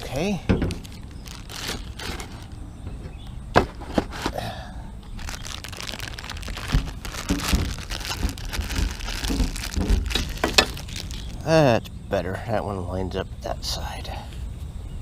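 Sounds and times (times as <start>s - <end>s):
dull knocks: 6.6s - 10.8s.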